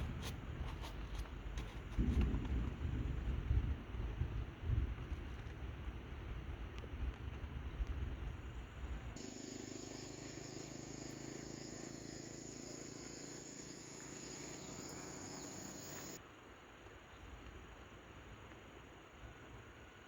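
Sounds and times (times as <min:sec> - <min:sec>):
insects trilling: 0:09.2 - 0:16.2.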